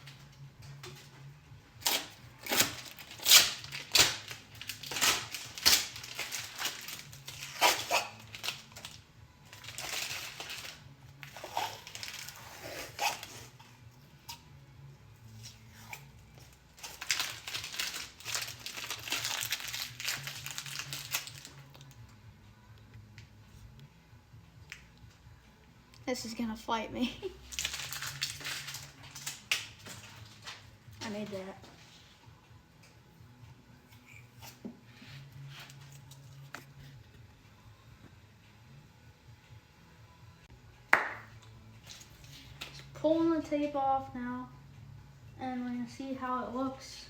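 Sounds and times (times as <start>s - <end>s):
masking tape ripping and crumpling: 1.8s - 13.6s, 15.3s - 22.0s, 27.4s - 31.5s.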